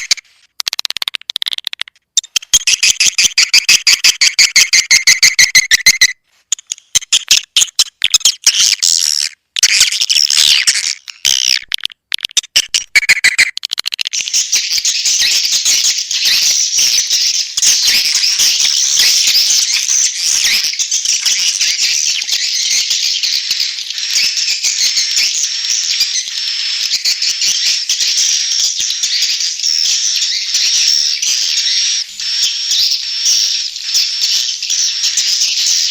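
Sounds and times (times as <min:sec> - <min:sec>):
high clicking chirps: 0:00.0 - 0:35.9
dense twittering of birds: 0:14.3 - 0:35.9.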